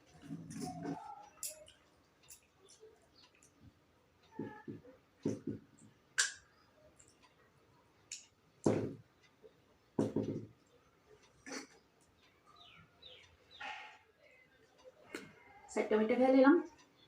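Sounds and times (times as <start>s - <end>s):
soft chewing: 0.0s - 5.0s, 10.6s - 15.7s.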